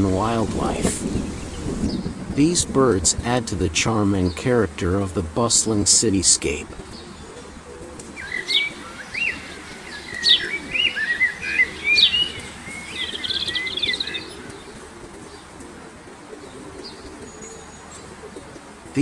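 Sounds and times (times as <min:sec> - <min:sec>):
low background noise: 0:00.0 - 0:19.0
small birds chirping: 0:05.6 - 0:15.6.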